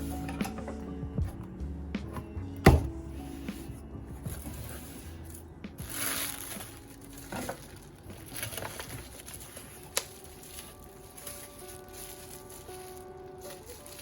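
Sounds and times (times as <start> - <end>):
faint background music: 0.0 - 14.0
packaging rustling and crinkling: 4.2 - 14.0.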